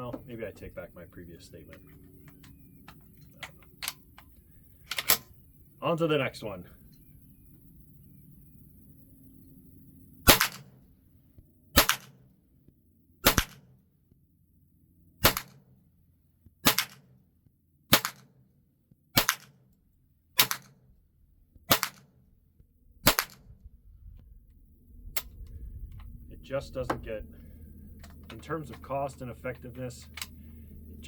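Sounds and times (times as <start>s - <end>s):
rifle gunshots: 10.3s - 10.7s, 11.8s - 12.1s, 13.2s - 13.6s, 15.2s - 15.6s, 16.6s - 17.0s, 17.9s - 18.3s, 19.2s - 19.5s, 20.4s - 20.7s, 21.7s - 22.0s, 23.0s - 23.4s.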